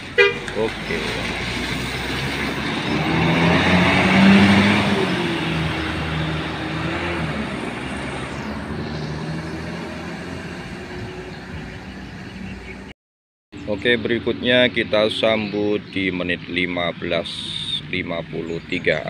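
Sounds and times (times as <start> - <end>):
diesel bus pulling away: 0.0 - 12.9, 13.6 - 19.0.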